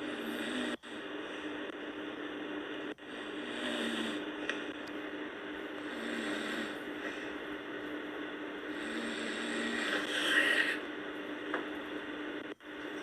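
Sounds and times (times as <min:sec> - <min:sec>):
person snoring: 0:00.0 - 0:01.1, 0:03.0 - 0:04.3, 0:05.8 - 0:07.4, 0:08.6 - 0:10.9
steady hum: 0:00.0 - 0:13.0.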